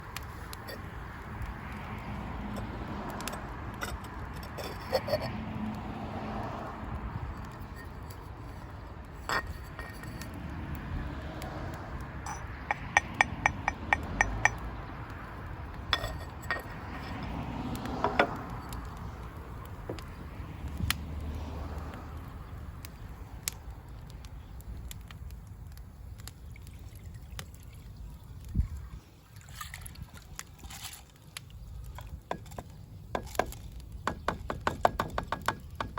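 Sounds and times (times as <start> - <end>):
small clinks and knocks: 7.3 - 10.4, 12.2 - 14.7, 15.7 - 20.2
liquid pouring and trickling: 26.3 - 33.7.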